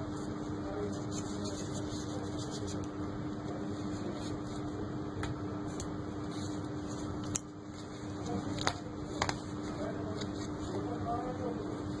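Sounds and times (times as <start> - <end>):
fan-like hum: 0.0 - 12.0.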